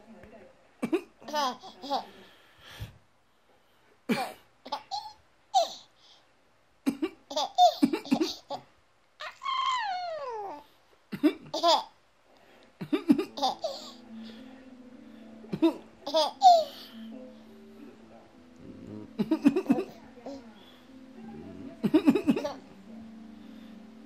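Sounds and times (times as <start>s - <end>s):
baby laughing: 1.3s - 2.1s, 6.9s - 8.6s, 11.2s - 11.9s, 12.8s - 14.0s, 15.5s - 16.9s, 19.2s - 20.4s, 21.8s - 22.7s
simple tune of held notes: 13.3s - 24.0s.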